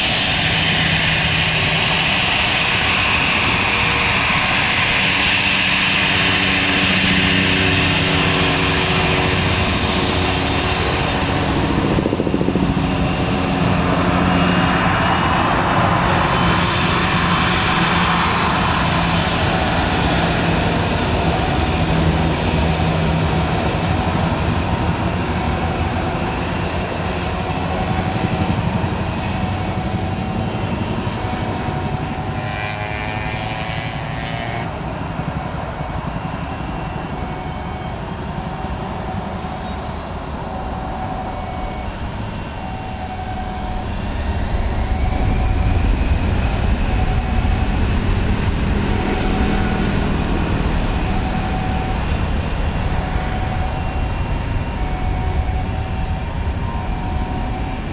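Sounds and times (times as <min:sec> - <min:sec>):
airliner engines running: 0:00.0 - 0:57.9
rising engine whine: 0:00.0 - 0:57.9
deep engine rumble: 0:34.7 - 0:57.9.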